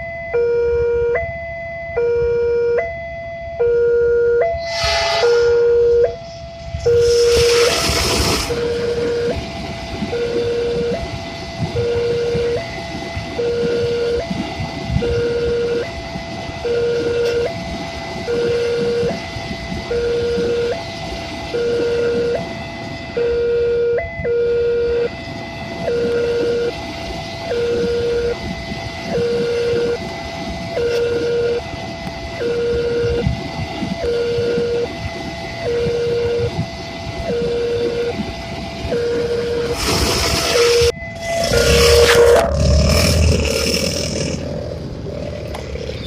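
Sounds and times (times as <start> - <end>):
level crossing warning alarm: 0.0 - 45.6
freight train rumbling past: 4.4 - 23.3, 24.2 - 34.0, 34.8 - 46.0
loud rush of noise: 6.2 - 11.8, 39.5 - 46.0.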